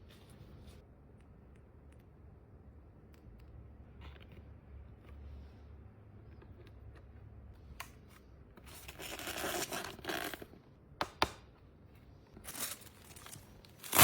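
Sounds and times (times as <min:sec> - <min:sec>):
packaging crinkling and tearing: 0:12.4 - 0:14.0.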